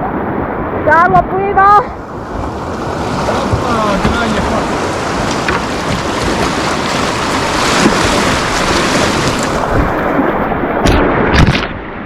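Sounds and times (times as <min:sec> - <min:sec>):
river rapids rushing: 0:01.9 - 0:10.7.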